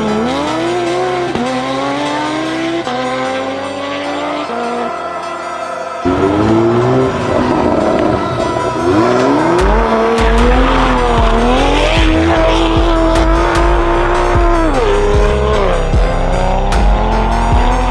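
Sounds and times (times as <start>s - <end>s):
sports car engine revving: 0.0s - 4.9s, 6.0s - 17.9s
music with deep bass beat: 6.0s - 17.9s.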